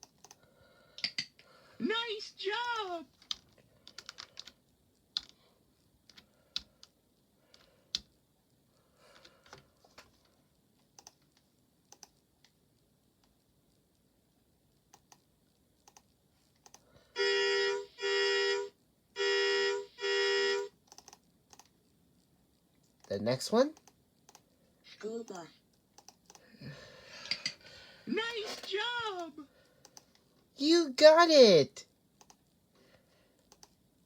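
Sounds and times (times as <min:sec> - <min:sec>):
faint clicks: 0:00.0 - 0:01.5, 0:09.0 - 0:16.9, 0:20.9 - 0:21.8, 0:23.7 - 0:24.5, 0:25.7 - 0:26.5, 0:29.6 - 0:30.3, 0:32.2 - 0:32.5, 0:33.4 - 0:33.8
school bus horn honking: 0:17.2 - 0:20.7.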